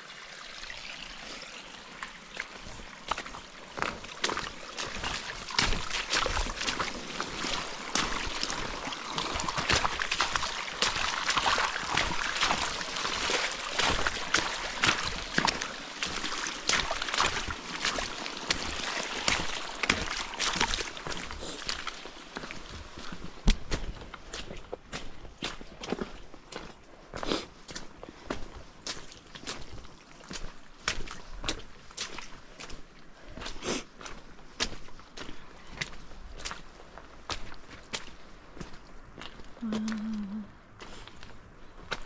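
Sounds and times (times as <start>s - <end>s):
running water rushing: 0.0s - 23.5s
boots splashing through water: 1.9s - 42.0s.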